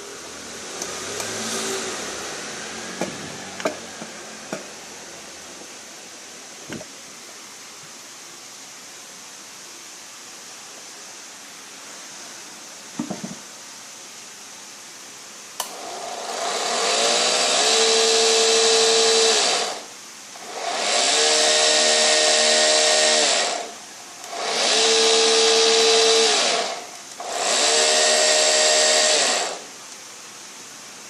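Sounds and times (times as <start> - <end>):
electric motor whining: 15.7 - 19.8, 20.4 - 29.7.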